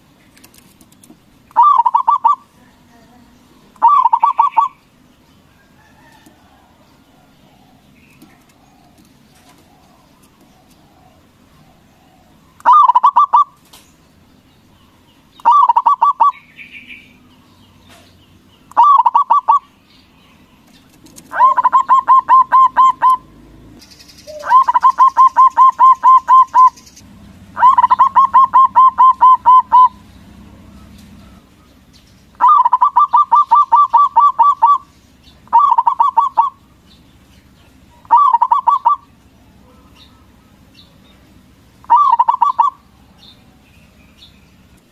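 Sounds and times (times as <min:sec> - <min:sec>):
dove cooing: 0:01.5 - 0:02.5, 0:03.7 - 0:04.8, 0:05.7 - 0:13.6, 0:15.4 - 0:17.0, 0:18.7 - 0:19.7, 0:21.0 - 0:31.7, 0:32.3 - 0:36.7, 0:37.9 - 0:40.9, 0:41.8 - 0:43.6.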